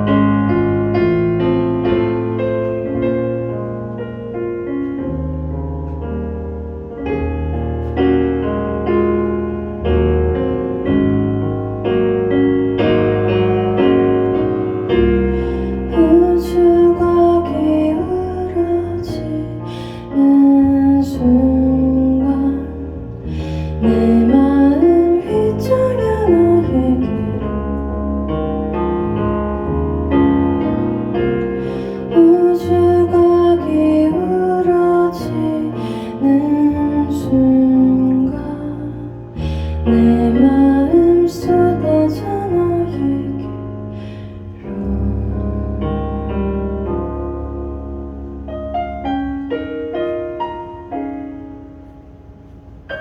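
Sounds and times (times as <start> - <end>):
piano chords: 0.0 - 53.0
person singing: 15.8 - 27.4, 32.1 - 43.5.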